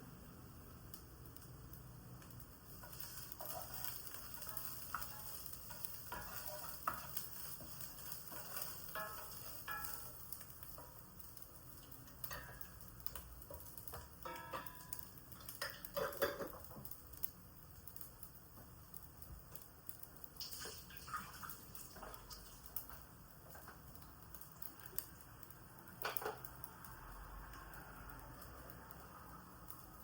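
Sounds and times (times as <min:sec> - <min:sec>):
food sizzling in a frying pan: 0:00.0 - 0:30.0
utensil scraping and clicking on pan: 0:02.7 - 0:16.9.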